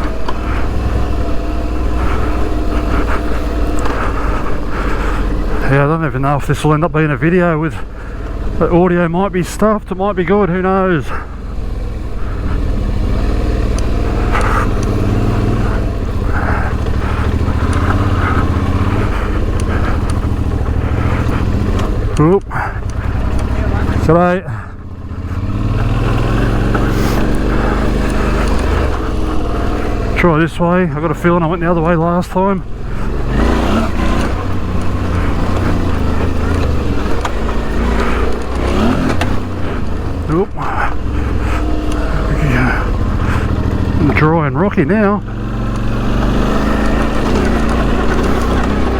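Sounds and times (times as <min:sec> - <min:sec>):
motorcycle engine riding: 0:00.0 - 0:48.9.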